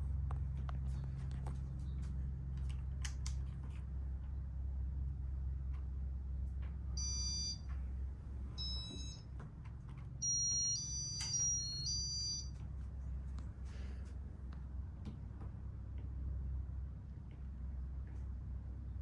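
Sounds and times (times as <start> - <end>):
low electrical hum: 0.0 - 19.0
high electronic beeps: 7.0 - 7.6, 8.6 - 9.2, 10.2 - 12.5.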